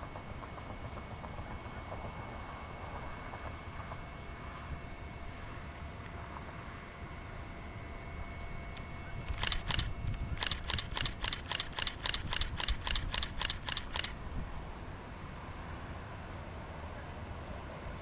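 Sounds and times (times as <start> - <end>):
camera shutter burst clicks: 9.2 - 14.7.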